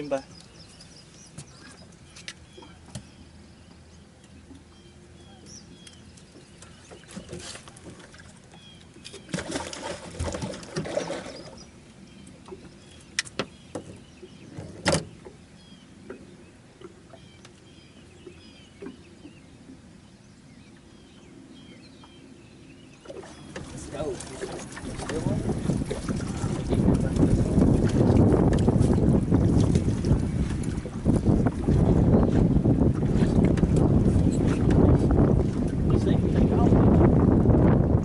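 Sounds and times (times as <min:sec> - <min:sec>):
birds chirping: 0:00.0 - 0:29.4, 0:30.0 - 0:35.3
rustling splashy handling noise: 0:09.2 - 0:11.5, 0:23.1 - 0:34.8.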